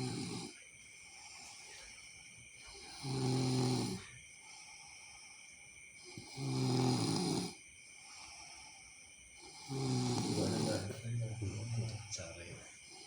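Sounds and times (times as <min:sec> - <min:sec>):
person snoring: 0:00.0 - 0:01.6, 0:02.7 - 0:04.1, 0:06.0 - 0:08.7, 0:09.4 - 0:12.1
breathy hiss: 0:00.0 - 0:13.0.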